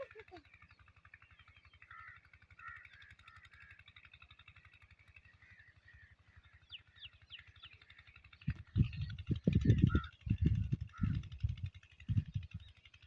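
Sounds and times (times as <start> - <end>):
faint birds chirping: 0.0 - 3.8, 4.6 - 12.9
low pulsing hum: 4.7 - 13.0.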